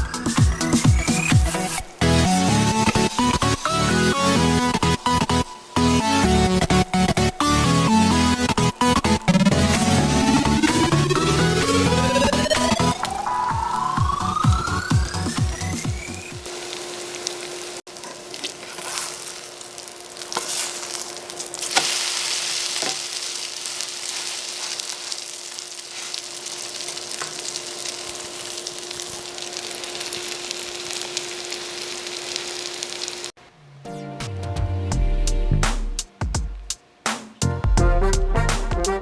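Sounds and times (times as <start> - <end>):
batter sizzling in hot oil: 15.1 - 33.4.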